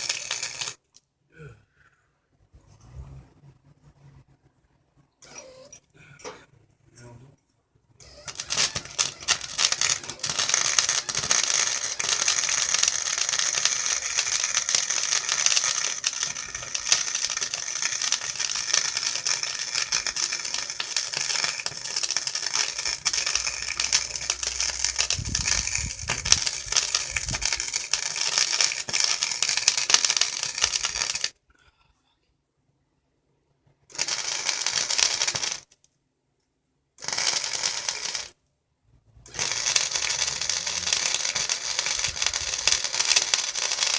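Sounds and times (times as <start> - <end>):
arc welding crackle: 0.0 - 0.8, 8.0 - 31.4, 33.9 - 35.7, 37.0 - 38.4, 39.3 - 43.9.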